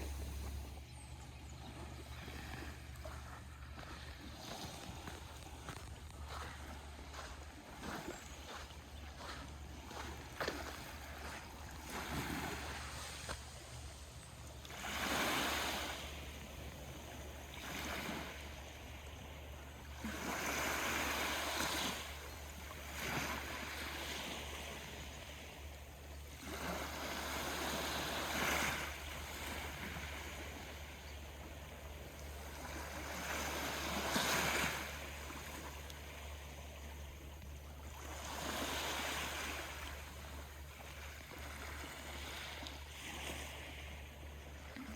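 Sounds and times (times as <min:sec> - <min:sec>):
small waves washing in: 0:00.0 - 0:00.8, 0:01.7 - 0:44.9
steady low hum: 0:00.0 - 0:20.0.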